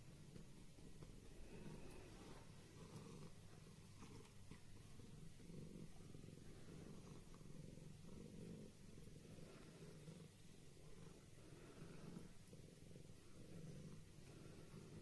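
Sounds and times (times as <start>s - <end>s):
cat purring: 0.0s - 15.0s.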